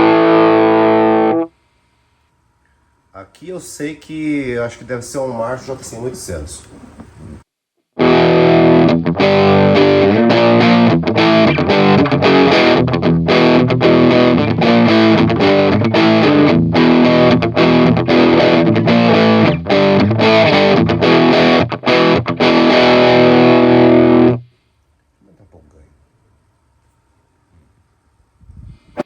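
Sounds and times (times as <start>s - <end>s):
distorted electric guitar riff: 0.0s - 1.5s, 7.9s - 24.5s.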